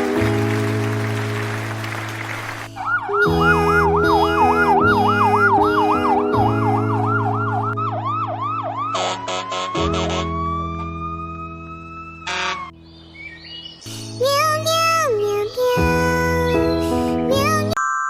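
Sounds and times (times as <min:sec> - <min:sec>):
music: 0:00.0 - 0:17.8
emergency siren yelping: 0:02.7 - 0:12.7.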